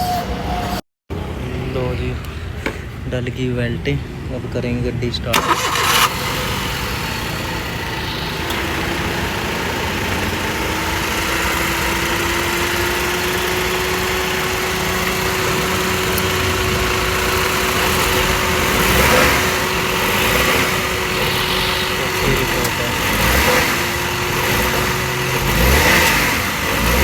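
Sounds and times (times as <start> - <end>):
car engine idling: 1.1 - 27.0
thin steady whine: 15.4 - 25.0.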